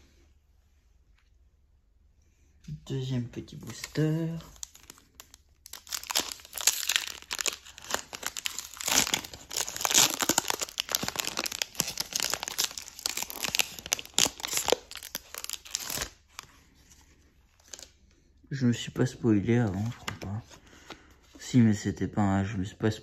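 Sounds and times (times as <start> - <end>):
foil wrapper crinkling: 3.7 - 16.5.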